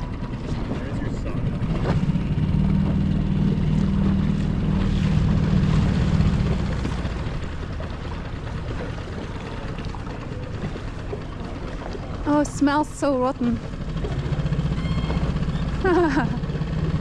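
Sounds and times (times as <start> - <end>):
engine drone: 0.0 - 17.0.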